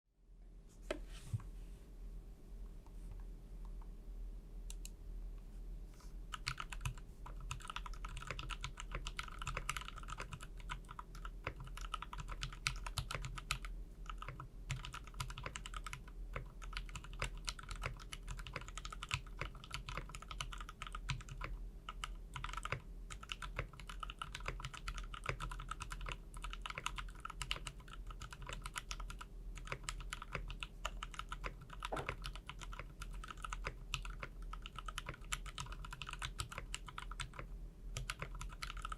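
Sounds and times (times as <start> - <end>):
mechanical keyboard keystroke clacks: 22.4 - 37.4.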